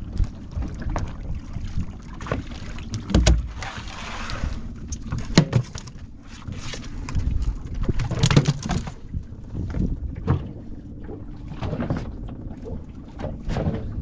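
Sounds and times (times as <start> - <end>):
boat engine low rumble: 0.0 - 14.0
water splashing: 0.0 - 14.0
wind on microphone: 6.3 - 14.0.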